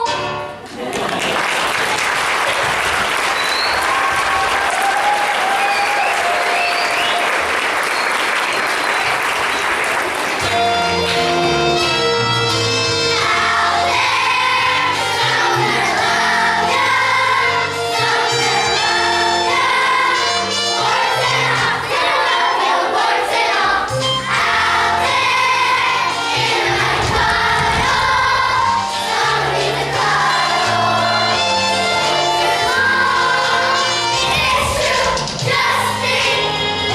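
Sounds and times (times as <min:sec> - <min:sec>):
instrumental accompaniment: 0:10.3 - 0:36.9
children's chorus singing: 0:10.4 - 0:36.9.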